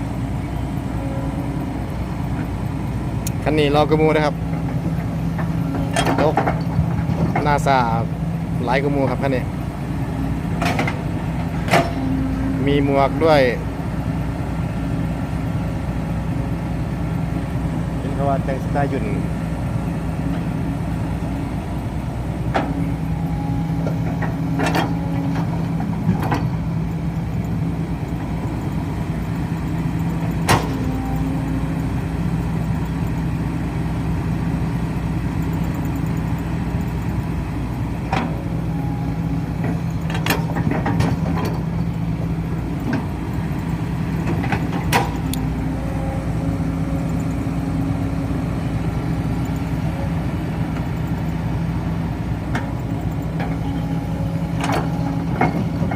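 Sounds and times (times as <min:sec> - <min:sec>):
heavy diesel engines droning: 0:00.0 - 0:55.9
sharp knocks and clanks: 0:30.4 - 0:30.9, 0:39.6 - 0:41.7.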